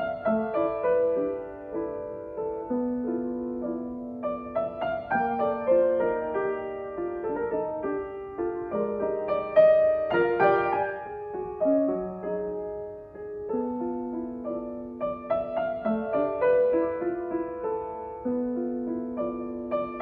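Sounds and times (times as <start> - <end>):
solo piano playing: 0.0 - 20.0.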